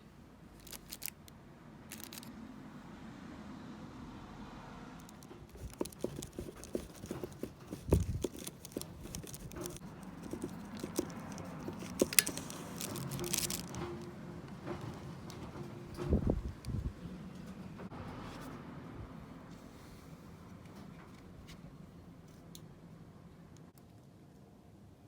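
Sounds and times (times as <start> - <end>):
tools clicking and clinking: 5.2 - 13.9.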